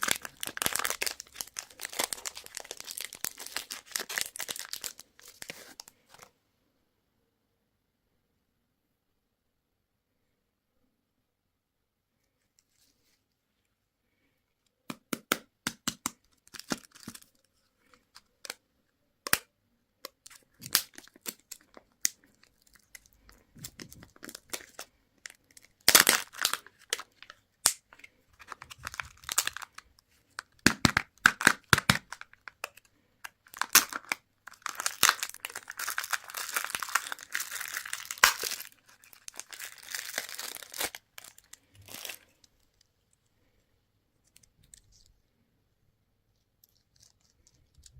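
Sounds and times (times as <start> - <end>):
plastic packaging tearing: 0.0 - 5.8, 25.6 - 27.8, 33.4 - 42.3
wrappers crinkling: 0.0 - 6.2, 20.5 - 27.4, 33.4 - 42.8.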